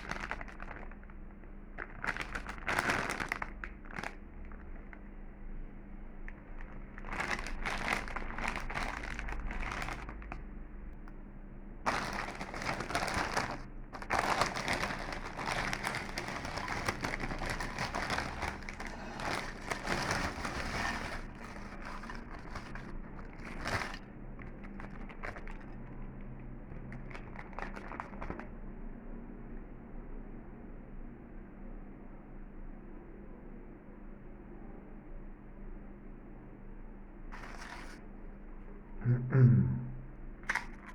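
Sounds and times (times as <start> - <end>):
potato chip bag crinkling: 0.0 - 5.0, 6.3 - 10.4, 11.9 - 28.5, 37.4 - 38.0, 40.4 - 40.9.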